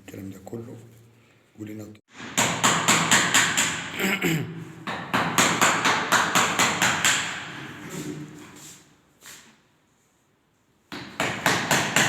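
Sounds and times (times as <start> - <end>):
rapid hammering: 2.1 - 3.9, 4.8 - 7.6, 10.9 - 12.0.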